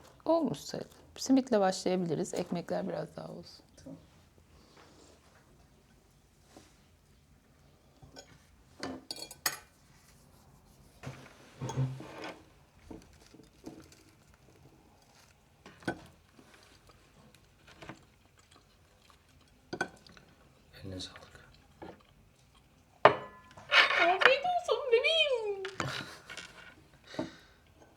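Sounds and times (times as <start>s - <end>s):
plates and cutlery clinking: 8.0s - 9.7s, 11.0s - 12.5s, 19.4s - 20.3s, 23.0s - 24.7s.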